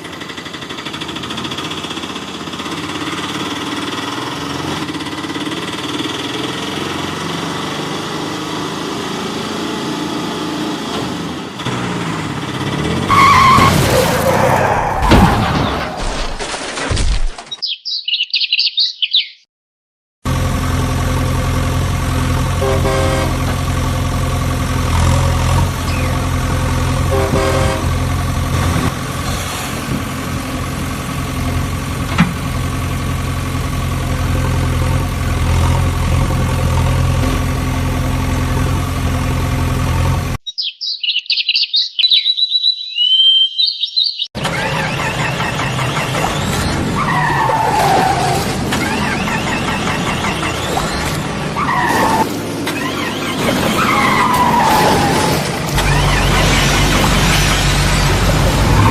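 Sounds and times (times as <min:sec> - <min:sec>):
engine drone: 0:00.0 - 0:15.2, 0:20.2 - 0:40.4, 0:44.4 - 0:58.9
birds chirping: 0:17.5 - 0:19.5, 0:25.8 - 0:26.2, 0:40.4 - 0:46.6, 0:48.8 - 0:51.9, 0:52.8 - 0:54.1
vehicle with sliding pitch: 0:44.4 - 0:58.9.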